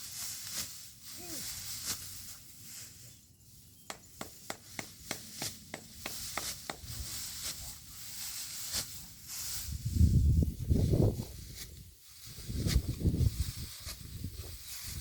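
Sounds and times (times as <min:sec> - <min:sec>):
sickle snipping rice stalks: 0:00.0 - 0:03.1, 0:03.8 - 0:09.9, 0:11.4 - 0:15.0.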